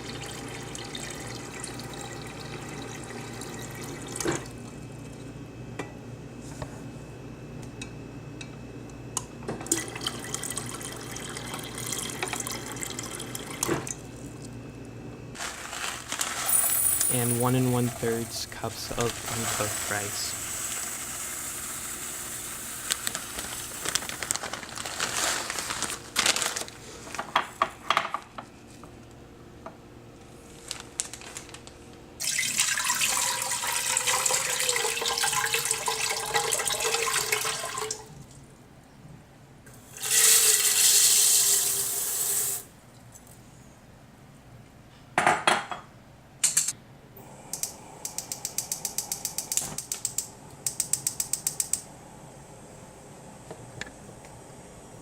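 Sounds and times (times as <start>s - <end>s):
tap water running into pot: 32.2s - 38.0s, 40.0s - 42.6s
kitchenware clattering: 45.2s - 45.9s.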